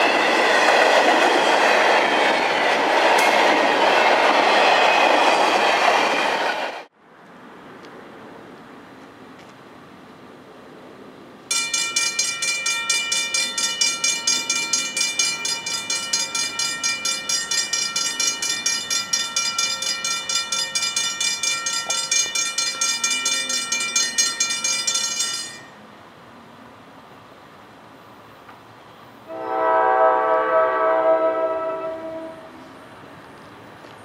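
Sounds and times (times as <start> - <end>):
crossing warning bell ringing: 11.5 - 25.8.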